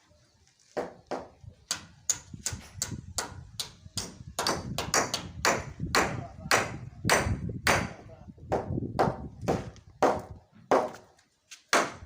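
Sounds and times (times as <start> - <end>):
hammer driving nails: 0.8 - 8.0, 11.7 - 12.0.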